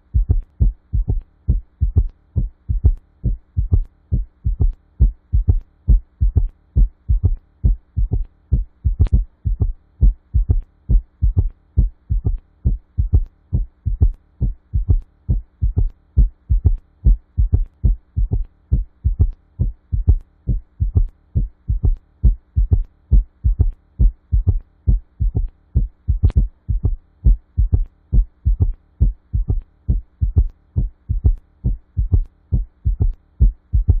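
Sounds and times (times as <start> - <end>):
faint hum: 0.0 - 34.0
galloping heartbeat thuds: 0.0 - 34.0.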